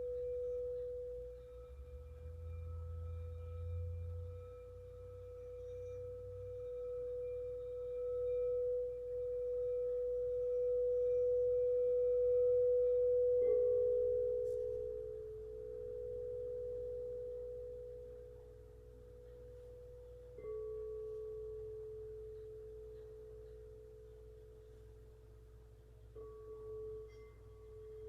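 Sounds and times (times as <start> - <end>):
lower singing bowl tone: 0.0 - 28.0
singing bowl ringing: 0.0 - 28.0.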